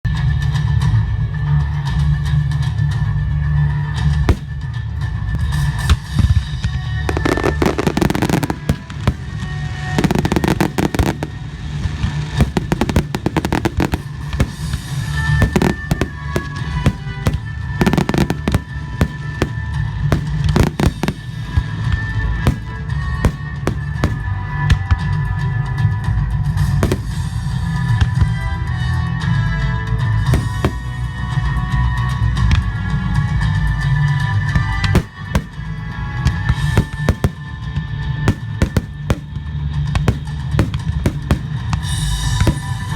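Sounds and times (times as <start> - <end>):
music playing: 1.0 - 42.9
fireworks bursting and crackling: 4.0 - 28.5, 30.1 - 32.6, 34.2 - 42.9.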